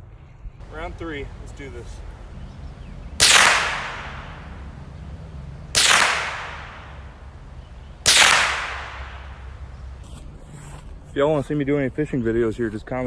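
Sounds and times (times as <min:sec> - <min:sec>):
rifle shots with echo: 0:03.1 - 0:09.7.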